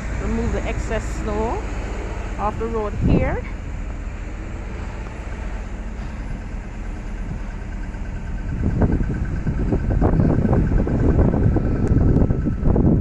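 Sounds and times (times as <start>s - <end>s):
low rumble of vehicle engine: 0.0s - 13.0s
wind buffeting microphone: 0.0s - 13.0s.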